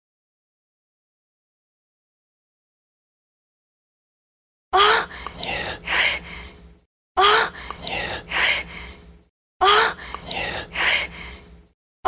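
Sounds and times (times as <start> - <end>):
woman gasping and moaning: 4.8 - 11.6.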